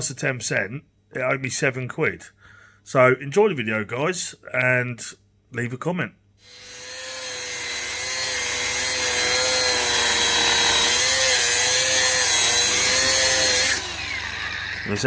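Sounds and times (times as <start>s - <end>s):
power tool whining: 6.4s - 15.0s.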